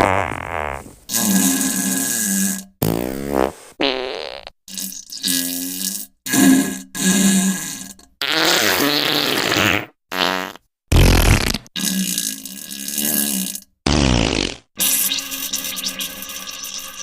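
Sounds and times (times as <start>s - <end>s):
sputtering farts: 0.0s - 2.2s, 2.8s - 5.8s, 8.2s - 11.8s, 12.8s - 15.1s.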